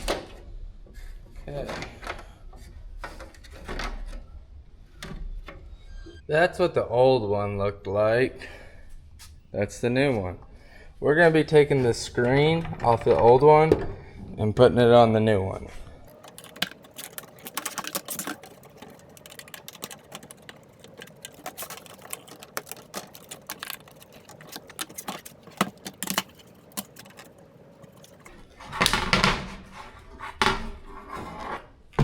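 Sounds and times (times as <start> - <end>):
sheet metal clicks and rattles: 16.1 - 29.3.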